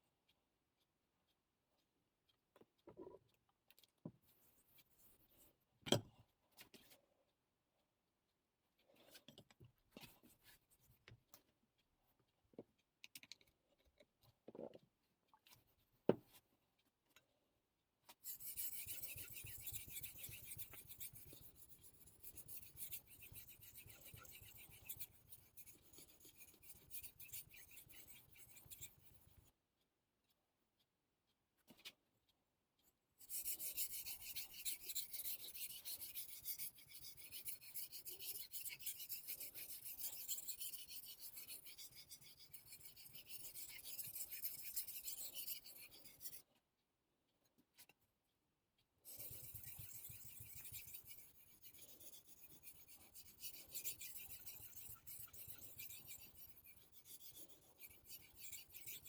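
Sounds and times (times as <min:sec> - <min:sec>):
knife scraping on whetstone: 0:18.3 - 0:29.3, 0:33.2 - 0:46.4, 0:49.1 - 0:59.0.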